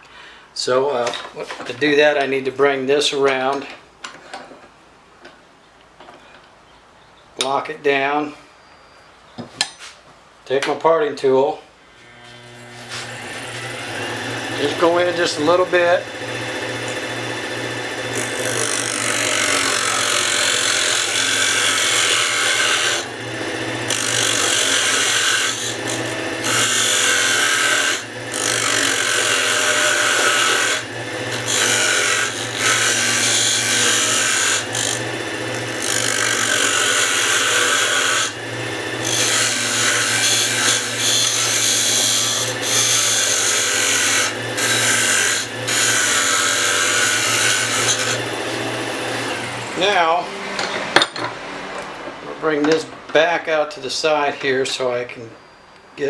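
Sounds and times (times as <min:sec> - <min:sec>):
lathe motor hum: 0:12.0 - 0:50.4
tool scraping spinning wood: 0:12.0 - 0:51.0.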